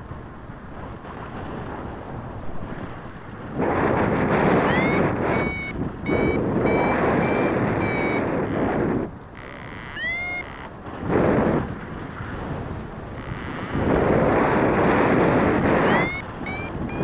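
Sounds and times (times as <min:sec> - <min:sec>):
wind noise on microphone: 0:00.0 - 0:17.0
variometer beeping: 0:04.4 - 0:10.8, 0:13.2 - 0:14.4, 0:15.4 - 0:17.0.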